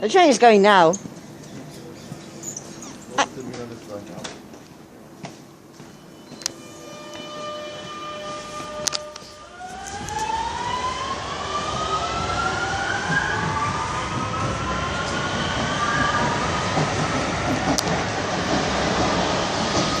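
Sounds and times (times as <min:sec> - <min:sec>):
wheels rumbling on rail: 0:00.0 - 0:20.0
electric train motor whine: 0:06.1 - 0:15.8.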